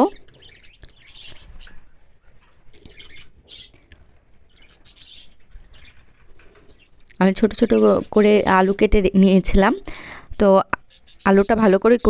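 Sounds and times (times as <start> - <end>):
faint bird chirps: 0.0 - 8.8.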